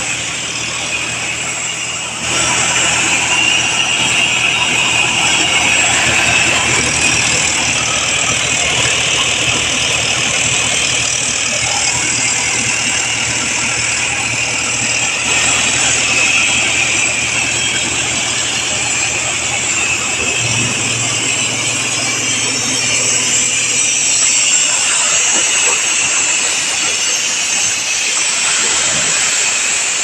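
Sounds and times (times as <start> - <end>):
air compressor hissing: 0.0 - 30.0
tractor diesel engine running: 0.0 - 30.0.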